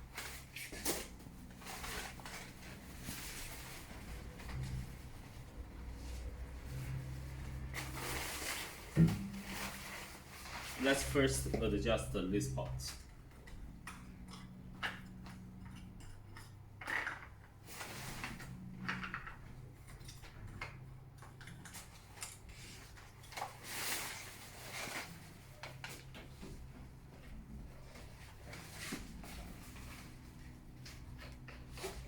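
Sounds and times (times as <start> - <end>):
rustling: 0.1 - 11.5.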